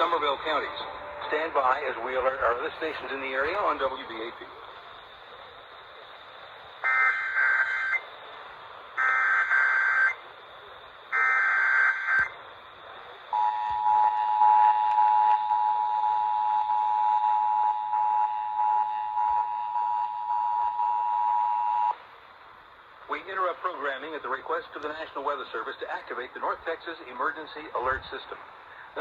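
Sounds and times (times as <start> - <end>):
digital data tone bursts: 6.8 - 8.1, 9.0 - 10.2, 11.1 - 12.4
two-tone attention signal: 13.3 - 22.0.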